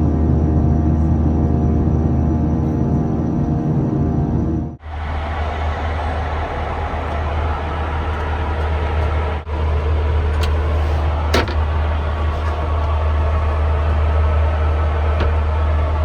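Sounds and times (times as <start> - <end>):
aircraft engine drone: 0.0 - 4.8.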